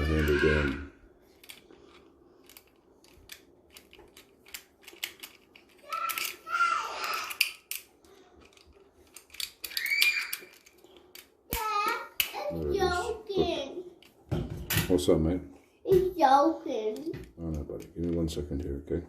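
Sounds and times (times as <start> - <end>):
child's voice: 5.8 - 7.4, 11.5 - 13.9, 15.9 - 17.2.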